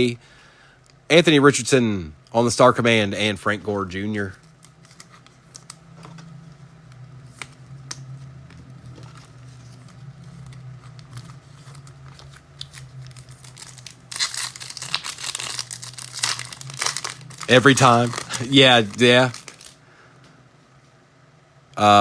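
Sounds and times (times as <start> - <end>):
low steady hum: 0.0 - 22.0
wrapper tearing and crinkling: 4.4 - 5.8, 8.6 - 19.8.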